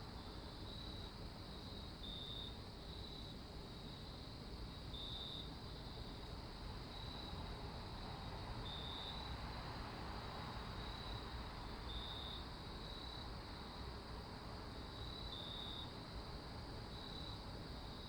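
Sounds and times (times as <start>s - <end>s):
crickets chirping: 0.2s - 18.0s.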